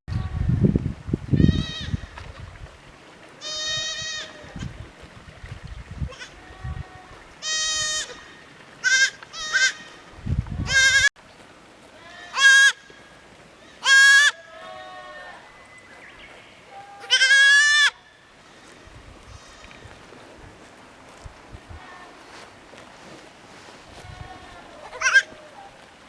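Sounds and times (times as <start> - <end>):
goat kids bleating: 1.4 - 2.1, 3.4 - 4.8, 6.1 - 10.0, 10.6 - 11.1, 12.0 - 12.9, 13.6 - 15.5, 16.7 - 18.0, 23.9 - 25.6.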